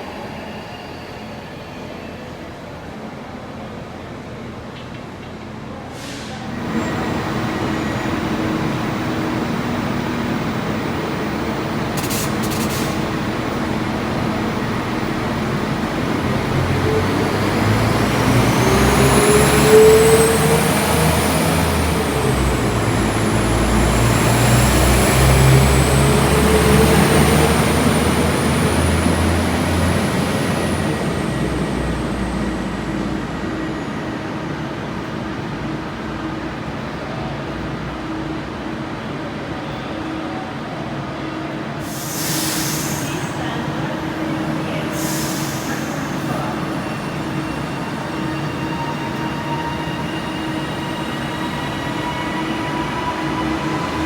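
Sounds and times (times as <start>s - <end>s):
train rumble: 2.8s - 54.0s.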